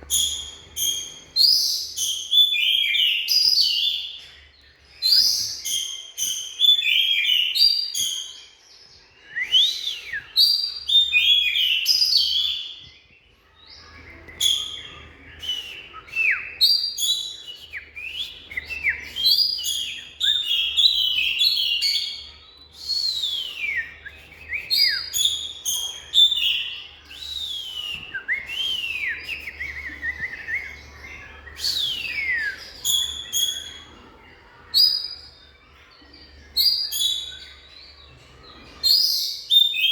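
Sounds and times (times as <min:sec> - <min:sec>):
bird singing varied song: 0:00.0 - 0:39.9.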